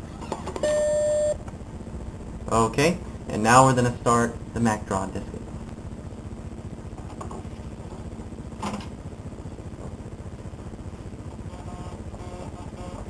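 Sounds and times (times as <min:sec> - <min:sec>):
floppy disk drive buzzing rattle: 0:06.9 - 0:09.2.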